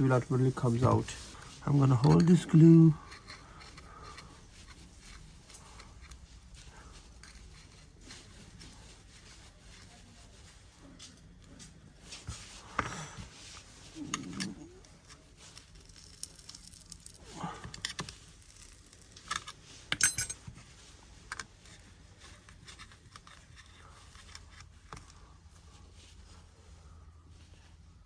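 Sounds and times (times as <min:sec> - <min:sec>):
metal tweezers clicking and scraping: 0:01.4 - 0:06.3, 0:15.5 - 0:20.5.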